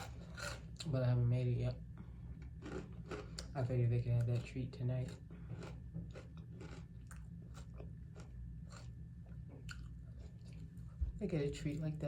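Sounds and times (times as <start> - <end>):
person chewing crisp lettuce: 0.0 - 0.9, 2.4 - 10.9.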